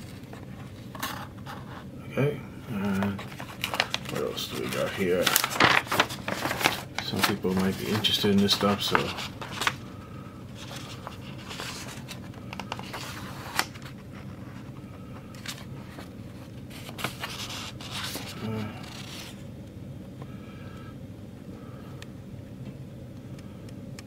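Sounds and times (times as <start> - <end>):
paper and packaging rustling: 0.0 - 1.8, 2.7 - 19.4
steady low hum: 0.0 - 24.0.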